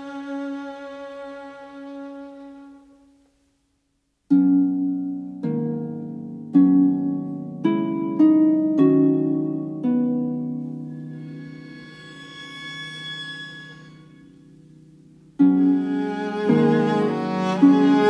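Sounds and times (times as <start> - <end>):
plucked notes ringing: 4.3 - 18.0
held string note: 10.8 - 18.0.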